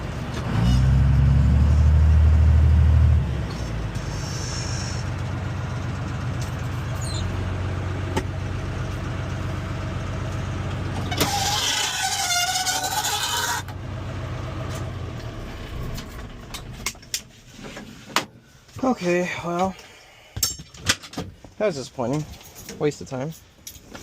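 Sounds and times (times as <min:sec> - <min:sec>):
truck engine idling: 0:01.0 - 0:17.6
loud hissing squeal: 0:04.0 - 0:05.1.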